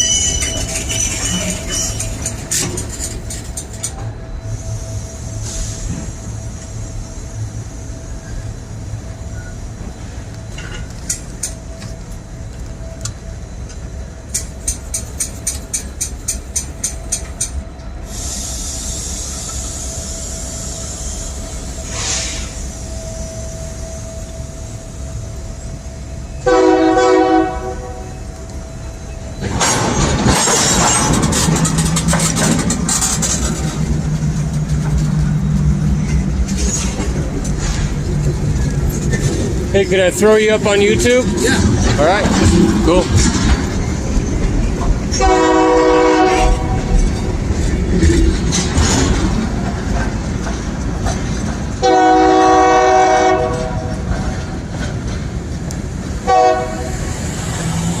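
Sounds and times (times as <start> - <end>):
train horn blasts: 26.4 - 28.4, 45.1 - 47.0, 51.8 - 54.1, 56.2 - 57.0
steady low rumble: 28.1 - 51.8.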